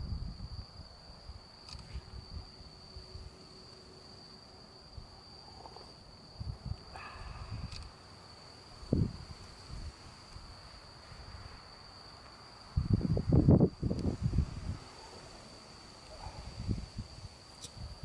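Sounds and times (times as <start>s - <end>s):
wind buffeting microphone: 0.0s - 3.3s, 6.4s - 7.9s, 8.7s - 11.9s, 12.6s - 18.0s
night insects trilling: 0.0s - 18.0s.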